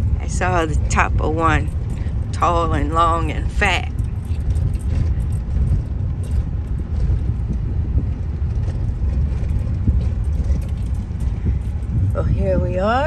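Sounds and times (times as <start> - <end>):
car engine and road rumble: 0.0 - 13.0
rattles and knocks from bumps: 0.0 - 13.0.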